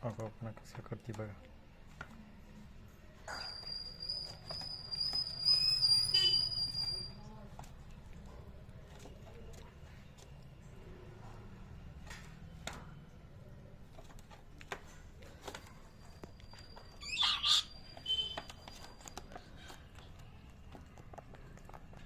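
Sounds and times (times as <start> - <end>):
parrot squawking: 17.0 - 18.2.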